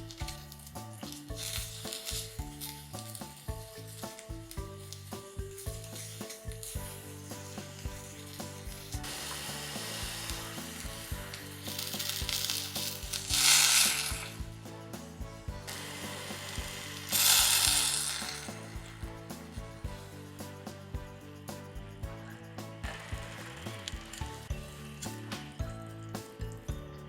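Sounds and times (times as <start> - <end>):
background music: 0.0 - 27.0
oil sizzling in a frying pan: 9.0 - 14.5, 15.7 - 18.6.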